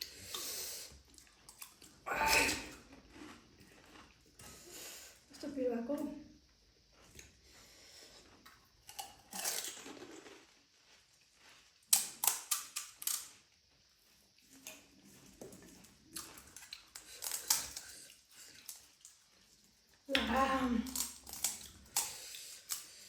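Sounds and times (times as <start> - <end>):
crisp shells crunching: 8.8 - 13.3, 20.9 - 22.0.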